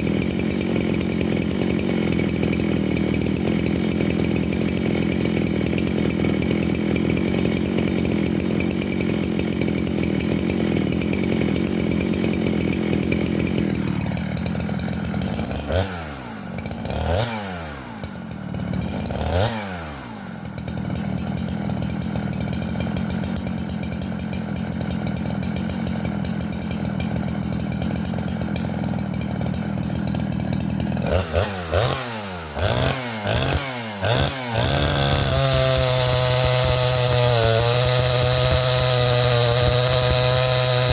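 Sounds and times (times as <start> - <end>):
chainsaw cutting wood: 0.0 - 40.9.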